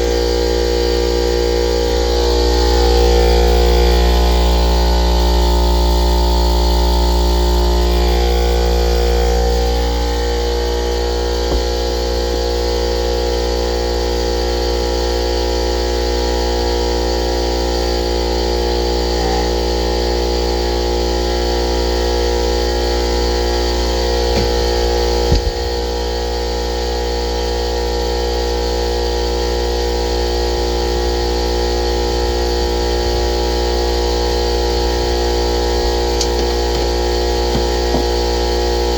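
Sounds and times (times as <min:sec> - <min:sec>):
air compressor humming: 0:00.0 - 0:38.9
short knock: 0:24.3 - 0:25.8.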